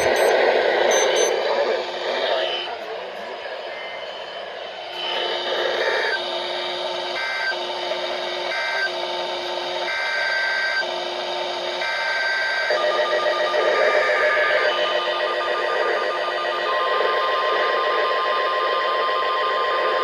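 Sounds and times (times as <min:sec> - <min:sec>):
pulsing alert tone: 0:00.0 - 0:01.3
screeching digital data tones: 0:00.0 - 0:06.4, 0:11.8 - 0:20.0.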